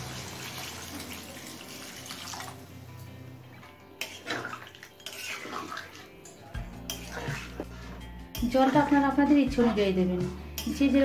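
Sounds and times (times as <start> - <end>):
hot water poured into pan: 0.0 - 2.6.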